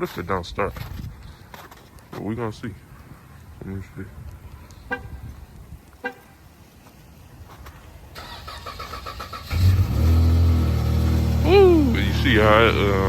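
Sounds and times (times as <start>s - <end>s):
car engine starting: 8.1s - 13.0s.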